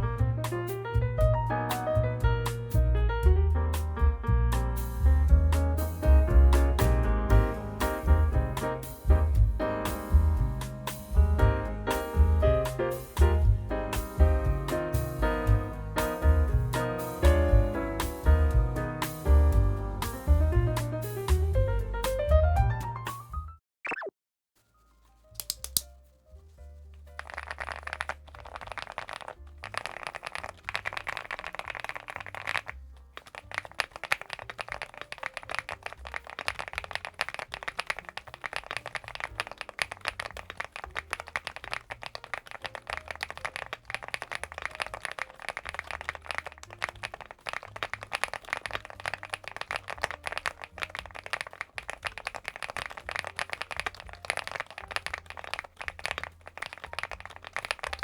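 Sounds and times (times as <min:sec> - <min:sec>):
background music with bass: 0:00.0 - 0:23.5
mechanical keyboard typing: 0:25.4 - 0:25.9, 0:27.2 - 0:58.0.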